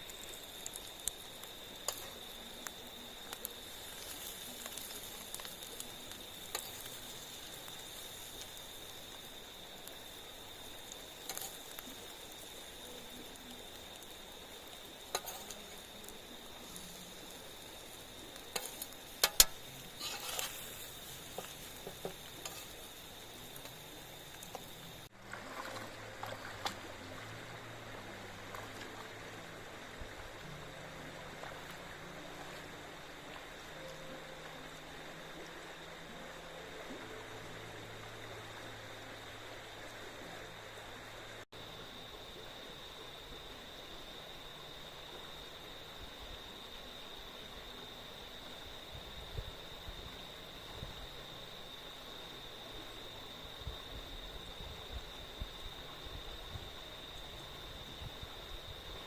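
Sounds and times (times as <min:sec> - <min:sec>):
bacon and eggs sizzling in a pan: 0:00.0 - 0:25.2.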